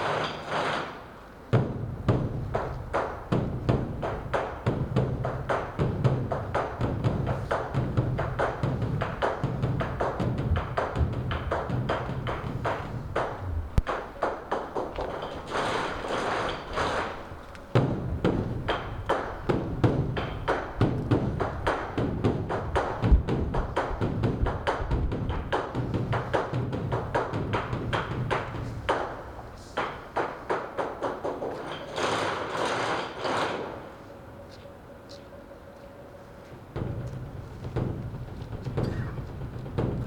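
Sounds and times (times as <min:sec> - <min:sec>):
large drum beaten rapidly: 0:03.4 - 0:14.8, 0:17.8 - 0:28.5, 0:36.8 - 0:40.0.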